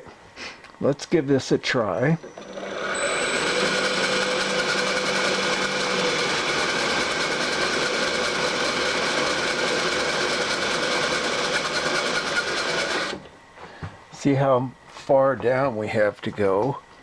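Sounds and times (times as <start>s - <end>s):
milling machine whine: 0.9s - 14.5s.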